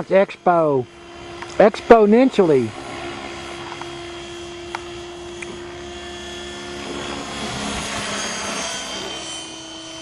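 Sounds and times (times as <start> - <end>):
rc helicopter motor whine: 0.0 - 10.0
rotor blades swishing: 0.0 - 10.0.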